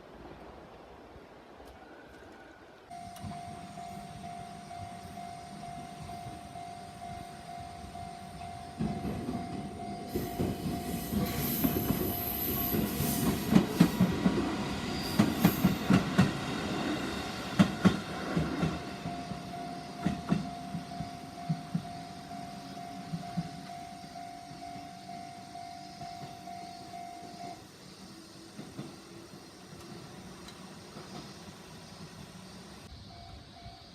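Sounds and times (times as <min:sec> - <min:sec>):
level crossing warning tone: 0:02.9 - 0:27.7, 0:32.8 - 0:33.9
train wheels clacking over rail joints: 0:08.8 - 0:22.0.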